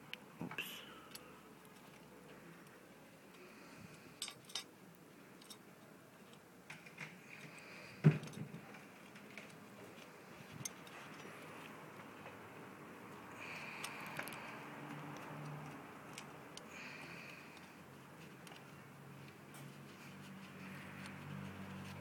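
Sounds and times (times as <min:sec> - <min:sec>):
small metal parts clicking: 0:04.2 - 0:04.7, 0:05.3 - 0:07.6, 0:13.6 - 0:19.4.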